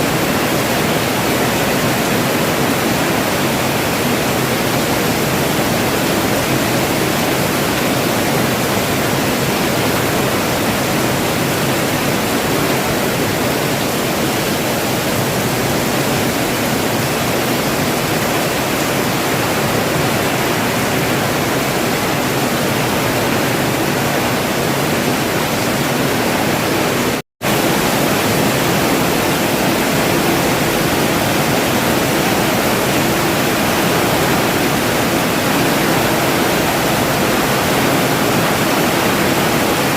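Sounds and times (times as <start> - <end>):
rain falling steadily: 0.0 - 39.9.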